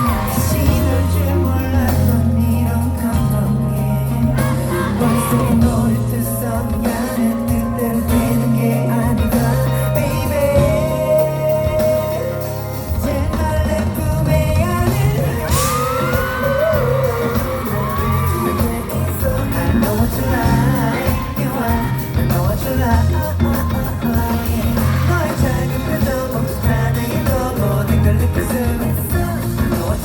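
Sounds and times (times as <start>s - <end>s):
crowd yelling and whooping: 0.0s - 1.9s, 4.2s - 5.9s, 14.6s - 23.0s
live pop song with heavy beat: 0.0s - 30.0s
person singing: 0.0s - 30.0s.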